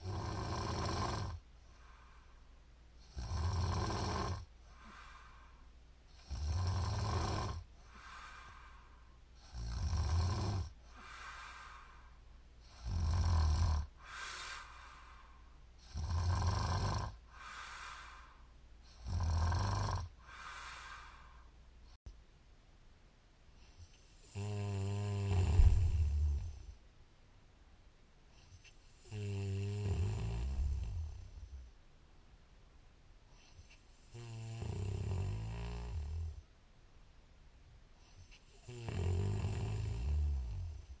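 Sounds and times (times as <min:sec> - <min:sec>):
woman snoring: 0:00.0 - 0:01.4, 0:03.0 - 0:05.4, 0:06.2 - 0:08.7, 0:09.4 - 0:11.9, 0:12.7 - 0:14.9, 0:15.8 - 0:18.3, 0:18.9 - 0:21.4, 0:24.2 - 0:26.7, 0:29.0 - 0:31.5, 0:34.0 - 0:36.4, 0:38.5 - 0:40.9
soft breath: 0:01.6 - 0:03.1, 0:04.6 - 0:05.8, 0:07.7 - 0:09.6, 0:10.8 - 0:12.8, 0:14.0 - 0:15.8, 0:17.2 - 0:19.0, 0:20.2 - 0:22.0, 0:25.3 - 0:26.8, 0:33.3 - 0:34.2, 0:37.9 - 0:38.7.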